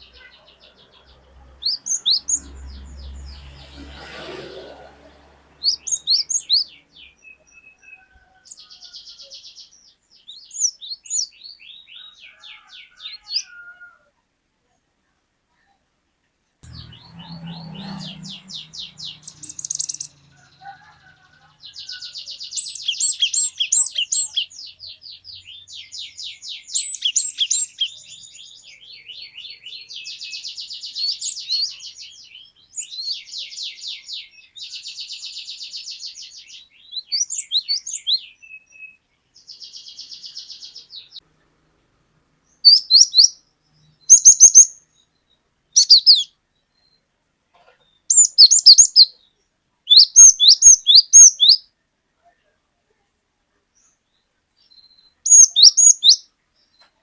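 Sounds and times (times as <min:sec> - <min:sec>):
sharp bird calls: 0:00.0 - 0:13.7, 0:16.6 - 0:41.2, 0:42.5 - 0:46.9, 0:47.8 - 0:49.3, 0:49.9 - 0:51.7, 0:54.8 - 0:57.0
bird singing fast high notes: 0:16.6 - 0:20.3.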